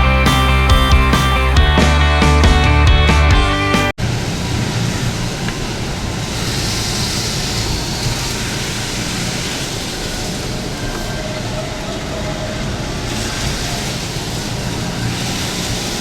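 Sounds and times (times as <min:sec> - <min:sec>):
rock music: 0:00.0 - 0:04.0
steady rushing noise: 0:04.0 - 0:16.0.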